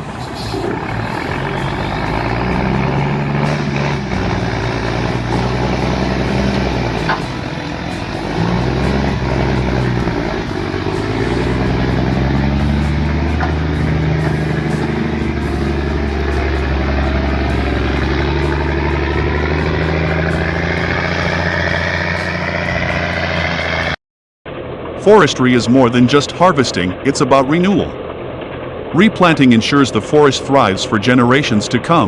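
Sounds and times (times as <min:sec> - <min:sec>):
rising engine whine: 0:00.0 - 0:31.8
large engine running: 0:00.0 - 0:32.0.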